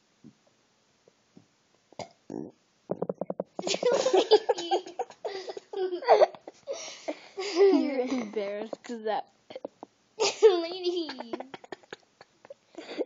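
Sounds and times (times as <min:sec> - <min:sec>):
loud laughter: 0:03.6 - 0:06.5, 0:10.2 - 0:12.4.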